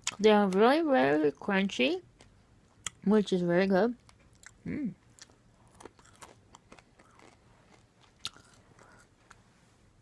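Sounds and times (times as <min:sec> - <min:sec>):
person chewing crunchy popcorn: 0:04.0 - 0:09.5.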